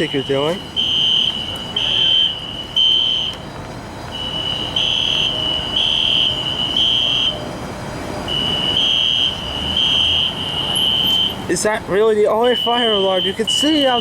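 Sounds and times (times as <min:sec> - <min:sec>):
faint steady alarm tone: 0:00.0 - 0:03.4, 0:04.1 - 0:07.4, 0:12.4 - 0:14.0
fire alarm beeping: 0:00.0 - 0:03.4, 0:04.2 - 0:07.4, 0:08.3 - 0:11.4, 0:12.4 - 0:14.0.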